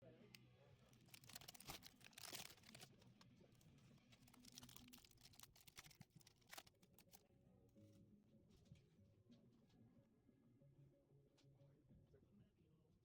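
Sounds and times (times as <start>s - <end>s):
wrapper crinkling: 1.0s - 3.2s, 4.1s - 7.2s.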